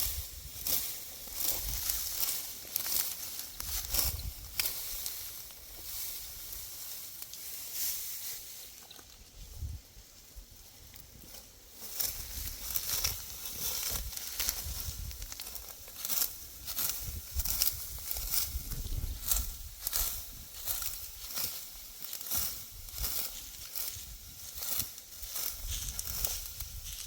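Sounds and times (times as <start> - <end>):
dry wheat stalks rustling: 0.0 - 27.0
wind rumbling on microphone: 3.6 - 4.6, 9.2 - 11.0, 12.1 - 15.4, 16.4 - 21.3, 25.2 - 27.0.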